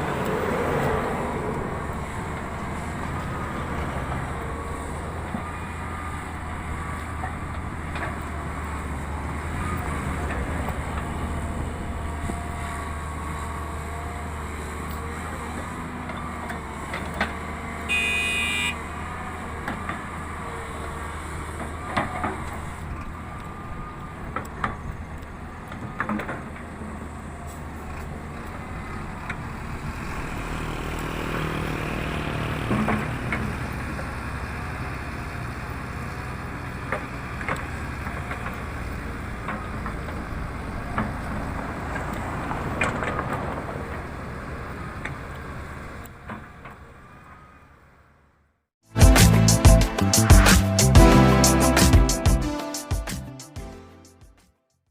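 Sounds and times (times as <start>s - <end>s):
diesel engine drone: 0.0s - 54.2s
short horn toot: 17.9s - 18.8s.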